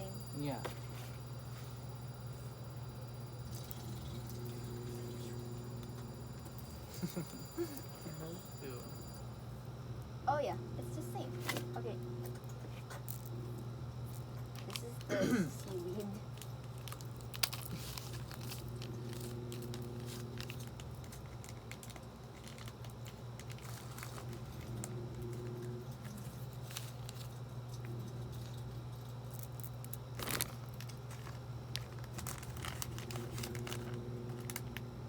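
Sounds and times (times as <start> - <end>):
steady low hum: 0.0 - 35.0
plastic packets crinkling: 15.8 - 24.4, 29.3 - 34.8.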